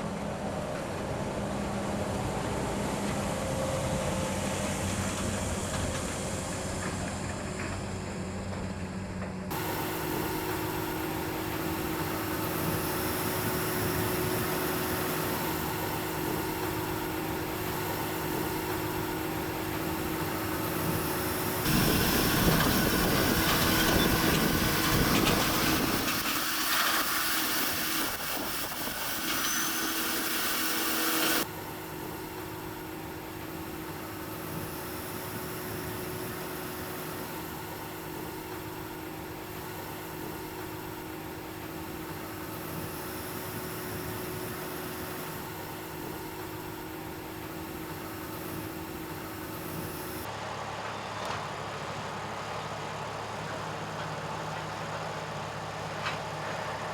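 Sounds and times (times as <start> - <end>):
tractor and baler running: 0.0 - 56.9.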